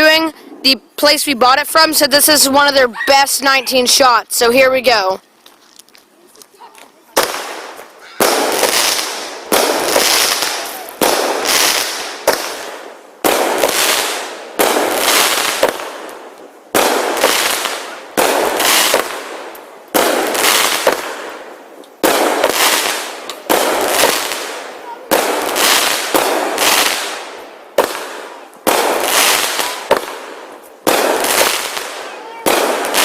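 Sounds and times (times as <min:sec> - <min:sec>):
firework shots with hissing tails: 0:06.9 - 0:33.0.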